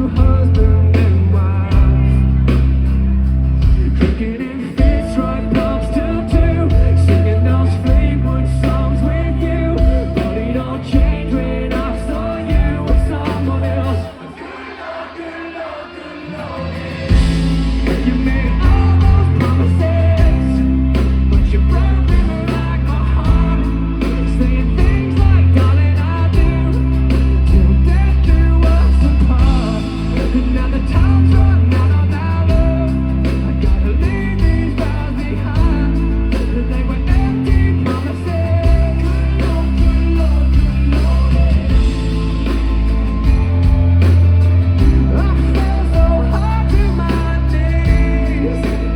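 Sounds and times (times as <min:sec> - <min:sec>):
heavy bass line: 0:00.0 - 0:14.3, 0:16.4 - 0:48.9
live rock band playing: 0:00.0 - 0:14.3, 0:15.9 - 0:48.9
guitars: 0:00.0 - 0:48.9
person singing: 0:03.6 - 0:42.3, 0:44.8 - 0:48.9.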